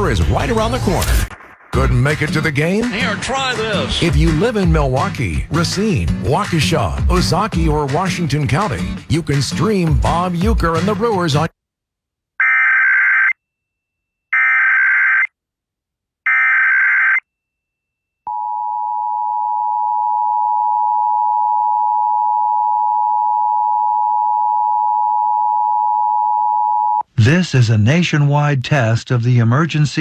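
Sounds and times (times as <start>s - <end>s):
harsh digital data warble: 0.0s - 3.4s.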